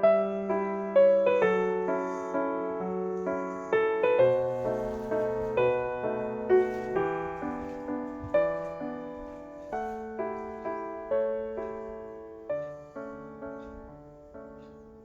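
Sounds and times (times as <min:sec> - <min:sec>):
gentle solo piano melody: 0:00.0 - 0:15.0.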